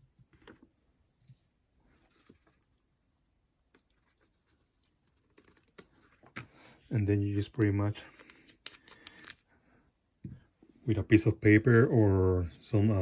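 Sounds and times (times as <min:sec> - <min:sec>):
soft rustles: 0:01.2 - 0:02.9.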